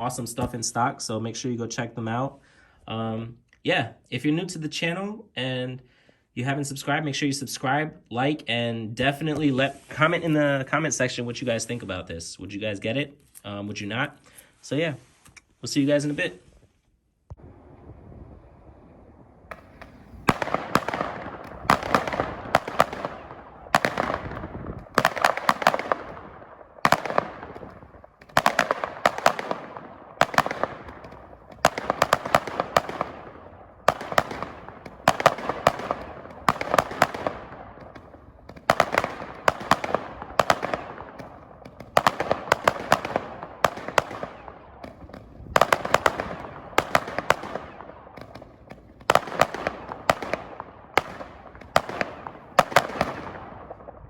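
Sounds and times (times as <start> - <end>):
fireworks bangs with echo: 19.5 - 54.0.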